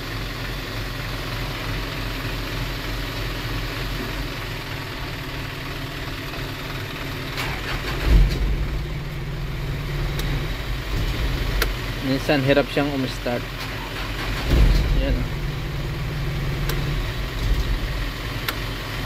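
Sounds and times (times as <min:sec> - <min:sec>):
diesel truck engine: 0:00.0 - 0:19.0
clicks: 0:10.1 - 0:11.8, 0:16.4 - 0:18.7.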